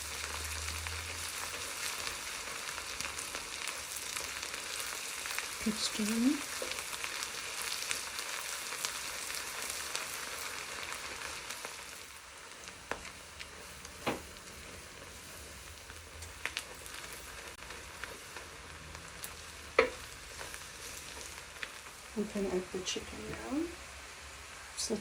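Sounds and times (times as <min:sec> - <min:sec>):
onions sizzling in oil: 0:00.0 - 0:25.0.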